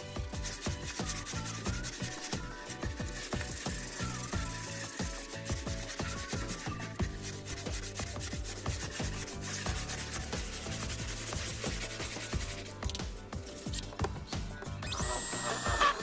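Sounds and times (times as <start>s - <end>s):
wood being sanded: 0.0s - 14.2s
background music with held notes: 0.0s - 16.0s.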